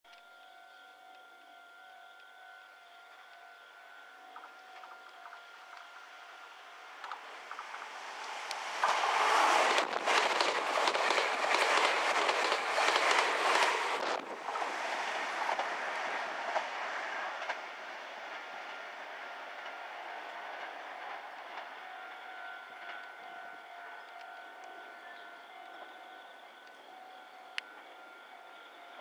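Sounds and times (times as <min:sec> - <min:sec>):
train wheels clacking over rail joints: 0:06.9 - 0:14.7.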